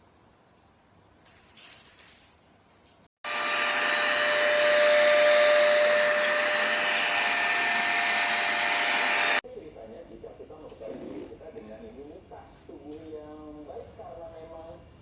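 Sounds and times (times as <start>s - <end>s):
vacuum cleaner running: 3.2s - 9.4s.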